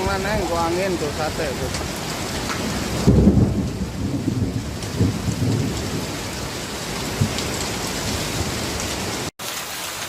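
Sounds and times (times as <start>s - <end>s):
heavy rain and hail: 0.0s - 10.0s
wind gusts on microphone: 1.2s - 9.3s.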